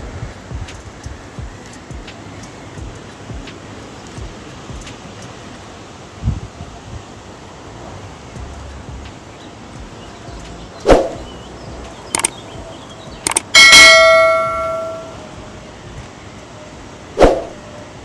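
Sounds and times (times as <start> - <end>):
short clicks: 11.8 - 12.4, 13.2 - 15.0
bell-like ding: 13.6 - 15.2.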